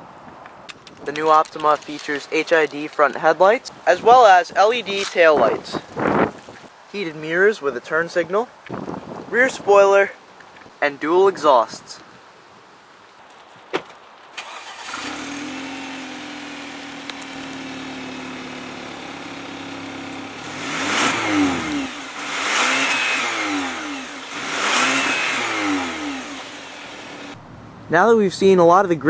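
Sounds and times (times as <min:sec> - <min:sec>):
car engine starting and revving: 0:14.4 - 0:27.9.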